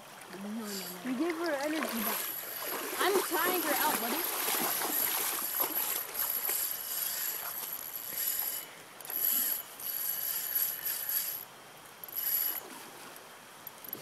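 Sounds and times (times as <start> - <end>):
fishing reel ratcheting: 4.8 - 12.7.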